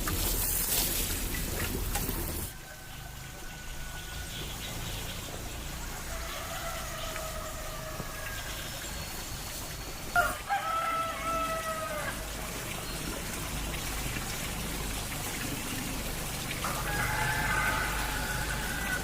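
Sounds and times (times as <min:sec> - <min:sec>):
rooster crowing: 0:02.5 - 0:04.5, 0:05.9 - 0:08.6, 0:10.1 - 0:12.3, 0:16.6 - 0:19.0.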